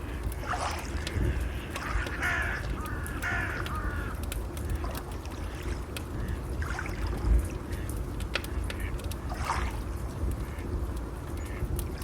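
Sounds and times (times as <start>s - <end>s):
fire crackling: 0.0s - 12.0s
low rumble of waves: 0.0s - 12.0s
bird cawing: 1.1s - 4.2s.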